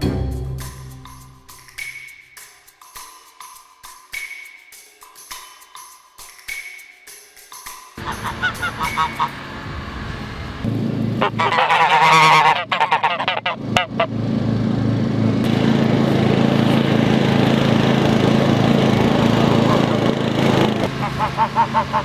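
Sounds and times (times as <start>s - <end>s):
geese honking: 8.0s - 9.4s, 11.2s - 14.1s, 19.2s - 22.0s
lawn mower engine: 8.0s - 12.6s, 13.6s - 22.0s.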